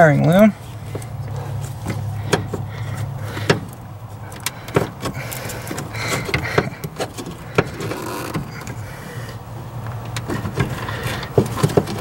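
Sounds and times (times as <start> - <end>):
plastic dash parts clicking: 1.8 - 8.8, 9.8 - 12.0.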